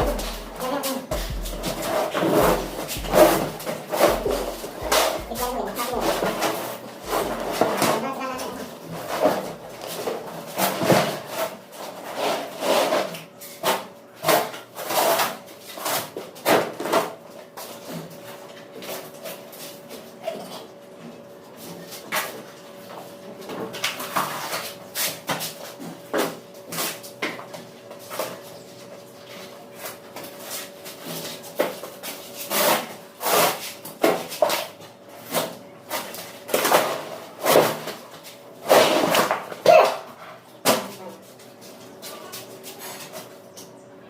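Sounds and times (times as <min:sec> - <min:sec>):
knocks and scraping strokes: 0:00.0 - 0:07.8
low hum: 0:00.0 - 0:08.7.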